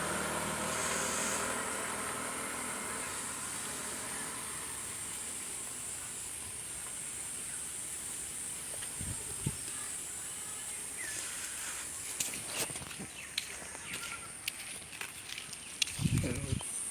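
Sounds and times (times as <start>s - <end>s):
high-pitched hiss: 0.0s - 12.8s.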